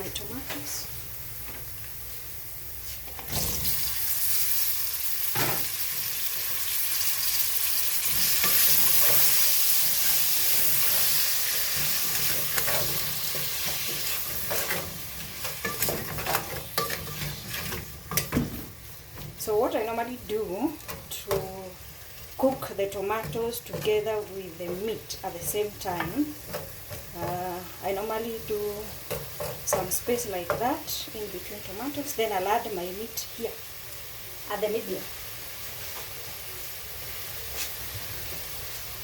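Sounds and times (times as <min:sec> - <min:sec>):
tomatoes sizzling in hot oil: 0:00.0 - 0:39.0
utensil scraping a pan: 0:08.0 - 0:18.7.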